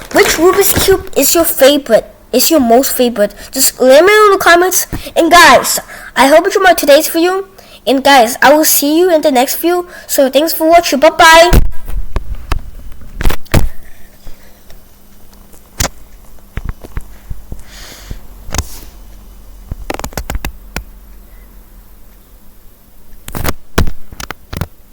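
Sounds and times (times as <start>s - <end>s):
faint steady hum: 0.0s - 24.9s
sharp clicks and knocks: 19.7s - 20.9s.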